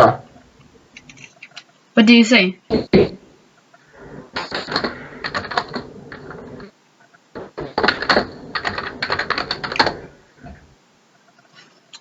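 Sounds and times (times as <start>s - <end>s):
typing on computer keyboard: 4.0s - 6.7s, 7.4s - 10.6s.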